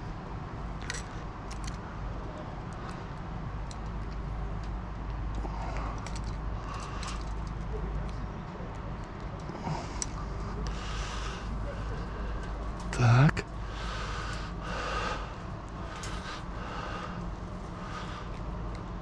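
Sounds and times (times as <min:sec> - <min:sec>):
distant traffic rumble: 0:00.0 - 0:19.0
metallic clicks on chain-link fence: 0:06.0 - 0:08.2, 0:15.9 - 0:16.4.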